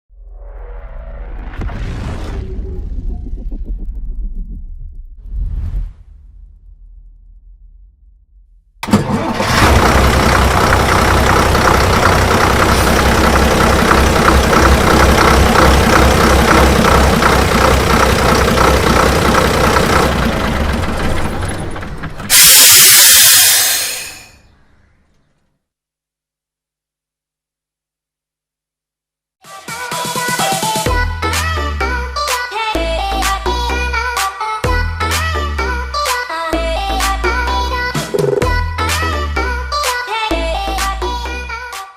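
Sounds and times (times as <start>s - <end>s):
bus engine idling: 8.8s - 24.2s
loud air hiss: 22.3s - 24.3s.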